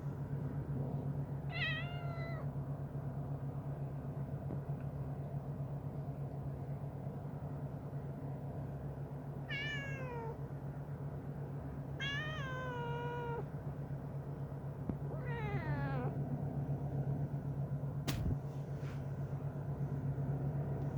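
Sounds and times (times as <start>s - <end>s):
cat meowing: 1.5s - 2.5s, 9.5s - 10.4s, 12.0s - 13.5s, 15.1s - 16.2s
sharp click: 18.1s - 18.4s.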